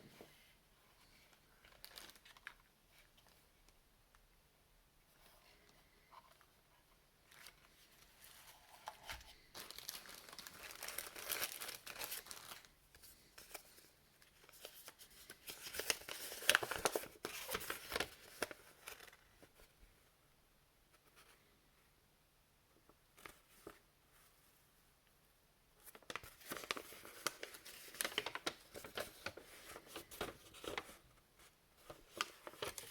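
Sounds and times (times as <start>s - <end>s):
plastic wrapping crinkling: 1.5s - 3.4s, 7.2s - 19.2s, 25.8s - 31.0s, 31.8s - 32.9s.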